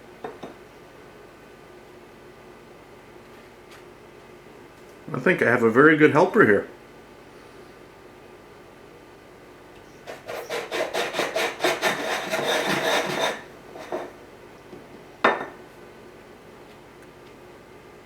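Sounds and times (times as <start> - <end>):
rubbing and scraping on board: 10.0 - 14.0.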